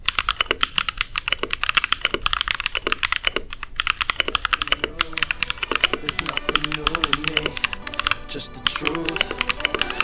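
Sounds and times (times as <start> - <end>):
mechanical keyboard key clacks: 0.0 - 8.2.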